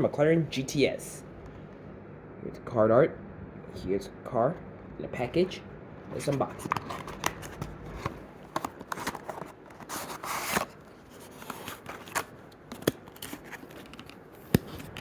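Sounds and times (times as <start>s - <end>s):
plastic and cardboard crackling: 6.1s - 15.0s.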